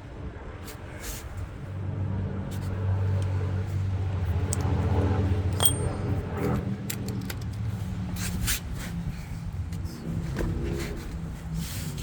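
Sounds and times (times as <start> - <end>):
metal tools clinking and scraping: 5.5 - 6.2
sharp click and ringing ping: 5.6 - 6.2.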